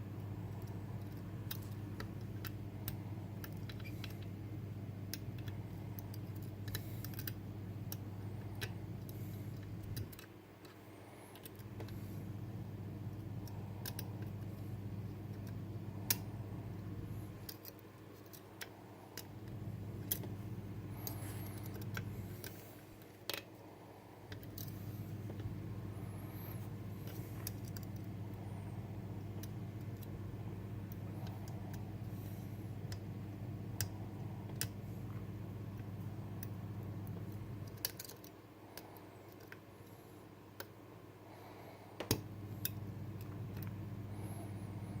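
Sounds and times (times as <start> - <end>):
steady low hum: 0.0 - 45.0
lock picks clicking and scraping: 37.6 - 38.4.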